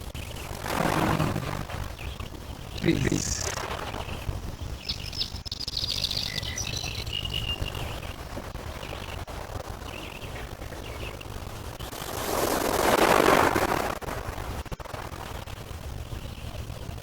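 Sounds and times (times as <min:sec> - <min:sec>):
faint bird chirps: 0:01.1 - 0:09.2.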